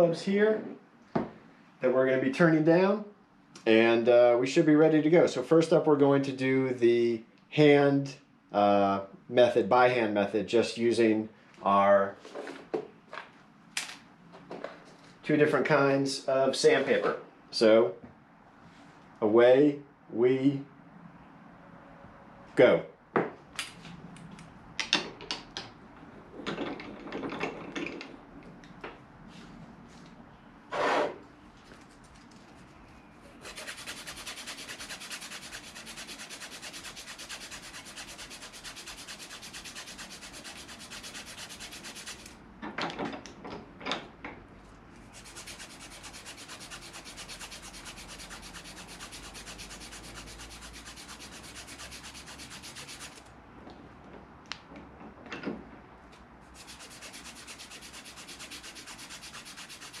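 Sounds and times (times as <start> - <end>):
sandpaper rasping on metal: 33.4 - 42.4, 45.1 - 53.3, 56.5 - 60.0.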